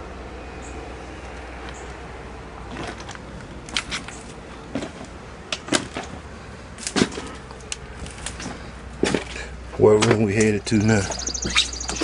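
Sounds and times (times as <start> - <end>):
footsteps crunching on debris: 6.8 - 10.2.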